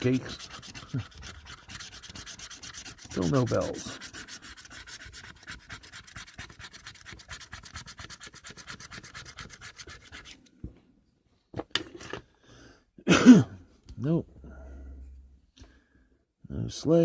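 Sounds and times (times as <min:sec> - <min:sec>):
scratching a scratch-off ticket: 0:00.0 - 0:10.4.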